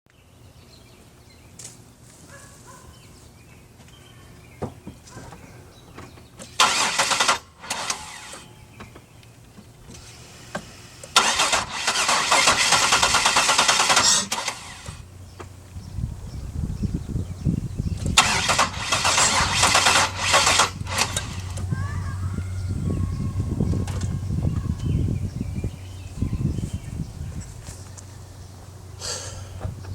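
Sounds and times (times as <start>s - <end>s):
engine starter cranking: 6.4s - 8.6s, 9.8s - 15.0s, 18.0s - 21.8s.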